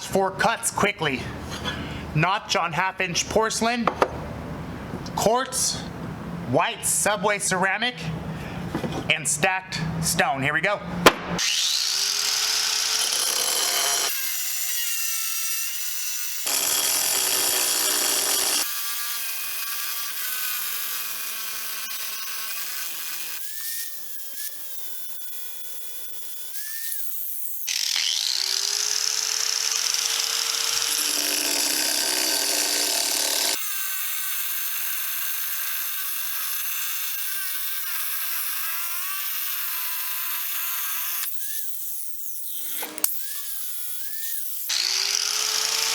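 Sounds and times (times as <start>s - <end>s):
angle grinder cutting stone: 11.3s - 45.9s.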